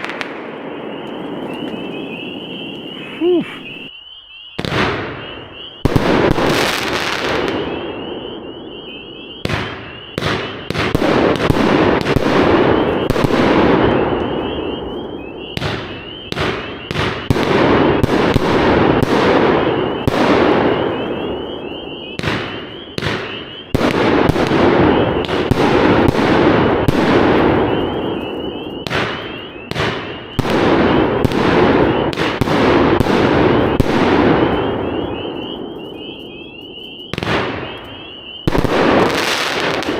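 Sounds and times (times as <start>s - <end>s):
firework bursts with crackle: 0.0s - 3.9s, 5.8s - 7.8s, 9.4s - 14.9s, 15.6s - 39.9s
firework shots going up: 0.0s - 3.9s, 15.6s - 39.9s.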